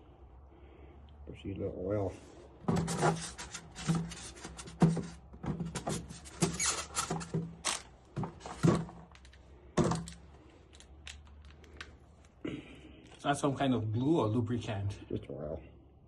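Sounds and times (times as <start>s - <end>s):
tools clicking and rustling: 2.8s - 12.4s.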